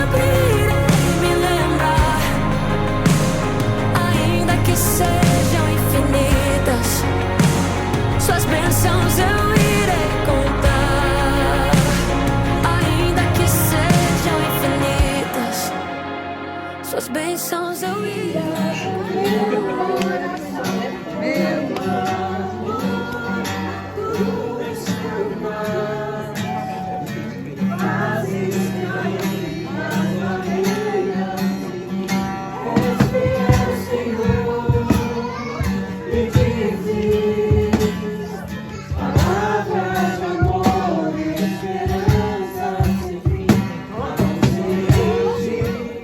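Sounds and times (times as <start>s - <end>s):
rhythmic sharp strokes: 0.0s - 16.9s
person singing: 0.0s - 31.4s, 32.5s - 46.0s
gospel worship music: 0.0s - 46.0s
guitar: 0.0s - 46.0s.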